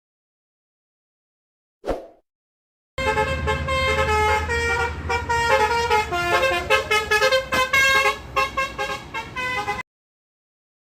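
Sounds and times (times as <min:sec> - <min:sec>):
multi-tone bus horn playing tune: 0:03.0 - 0:09.8.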